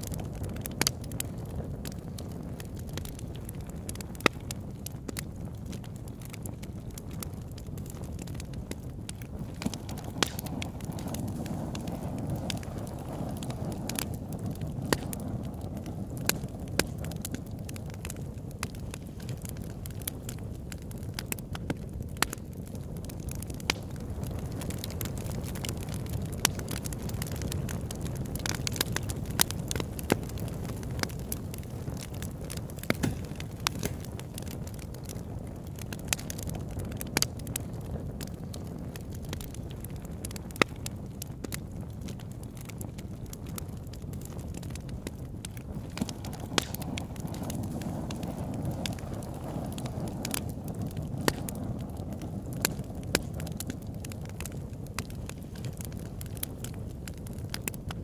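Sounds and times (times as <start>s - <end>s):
campfire flames rushing: 0.0s - 58.0s
fire crackling and popping: 0.0s - 58.0s.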